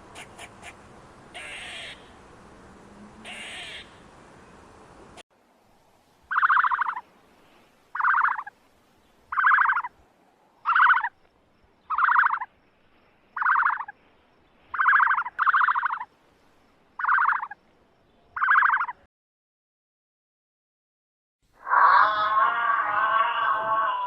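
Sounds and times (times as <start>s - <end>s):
frog pulsed calls: 0.2s - 2.1s, 3.2s - 4.0s, 6.3s - 7.0s, 7.9s - 8.6s, 9.3s - 10.0s, 10.6s - 12.6s, 13.3s - 14.0s, 14.7s - 16.1s, 17.0s - 17.6s, 18.2s - 19.1s.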